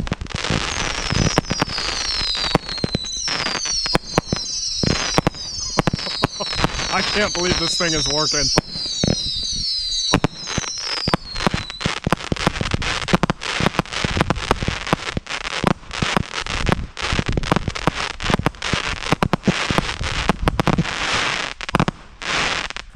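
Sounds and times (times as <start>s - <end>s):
firework whistles: 0.0s - 14.3s
fireworks popping and crackling: 0.0s - 22.9s.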